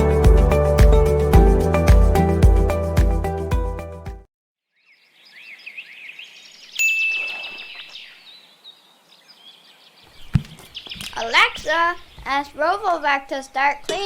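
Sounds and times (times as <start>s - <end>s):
birds chirping: 4.7s - 13.1s.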